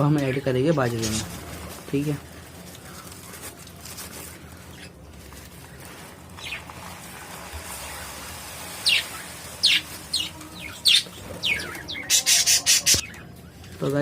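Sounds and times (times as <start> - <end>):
budgerigars chirping: 6.4 - 6.7, 8.8 - 13.2.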